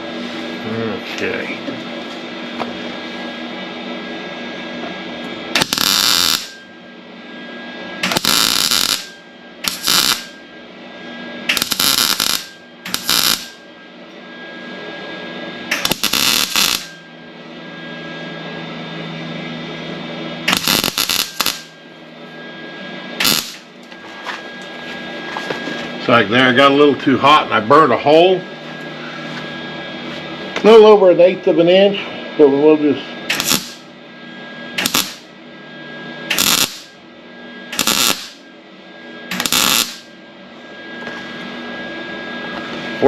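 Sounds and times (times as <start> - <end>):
steady hum: 0.0 - 43.0
crackling welding arc: 5.5 - 6.6, 8.0 - 10.4, 11.5 - 13.6, 15.7 - 17.0, 20.5 - 21.7, 23.2 - 23.7, 33.3 - 33.8, 34.8 - 35.3, 36.3 - 37.0, 37.8 - 38.4, 39.3 - 40.1.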